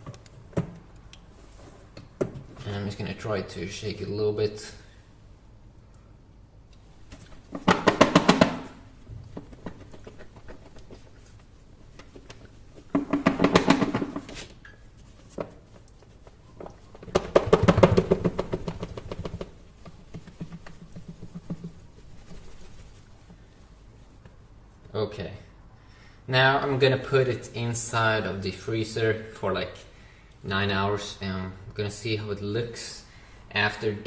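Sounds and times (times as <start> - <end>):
objects rattling in shaken container: 16.2 - 23.2.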